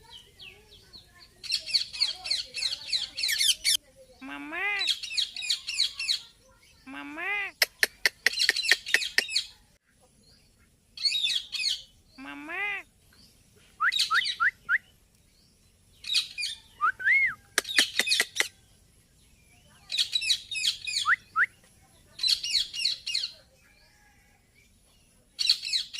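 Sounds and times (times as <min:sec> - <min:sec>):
parakeet chirps and squawks: 0:01.5 - 0:03.8
sharp clicks: 0:17.6 - 0:18.5.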